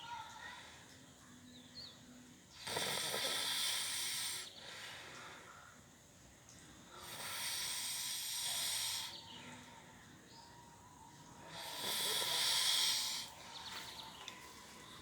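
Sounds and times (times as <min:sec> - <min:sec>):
person snoring breaths: 0:02.6 - 0:04.5, 0:07.0 - 0:09.2, 0:11.5 - 0:13.4.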